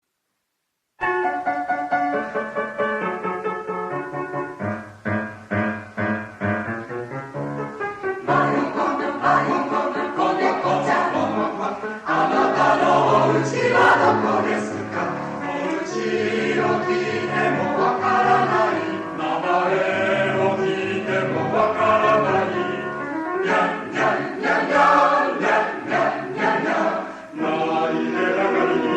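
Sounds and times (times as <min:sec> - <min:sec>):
choir singing: 0:08.2 - 0:28.9.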